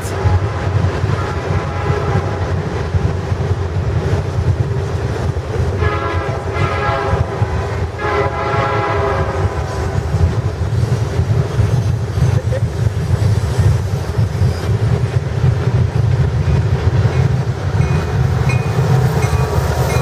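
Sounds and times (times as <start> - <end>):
passing train rumble: 0.0 - 20.0
locomotive horn blasts: 0.2 - 2.5, 5.8 - 10.2.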